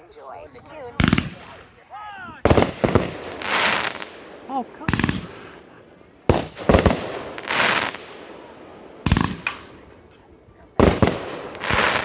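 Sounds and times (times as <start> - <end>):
fireworks bangs: 0.0 - 12.0
fireworks hissing and crackling: 0.0 - 12.0.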